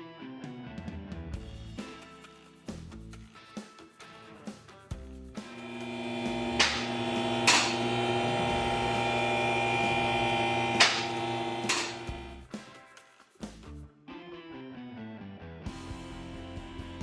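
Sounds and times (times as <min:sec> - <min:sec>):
electrical hum: 0:05.4 - 0:12.4
sharp knocks: 0:06.4 - 0:08.0, 0:10.8 - 0:12.2.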